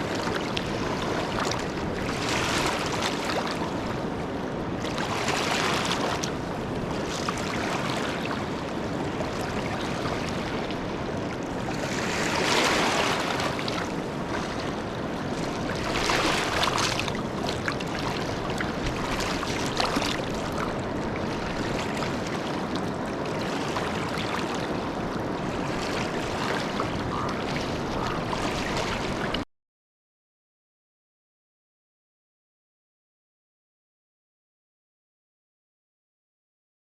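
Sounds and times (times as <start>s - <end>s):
river water rushing: 0.0s - 29.4s.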